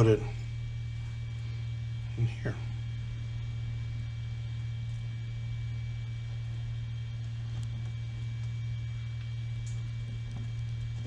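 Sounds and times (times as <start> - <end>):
steady low hum: 0.0 - 11.0
faint light clicks: 9.2 - 10.6.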